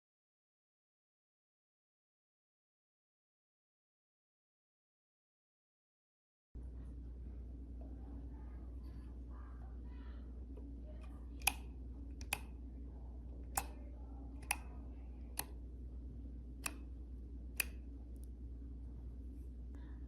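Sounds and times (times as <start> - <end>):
low steady hum: 6.6 - 20.0
sharp clicks: 11.4 - 12.6, 13.5 - 13.8, 14.4 - 14.7, 17.6 - 18.3.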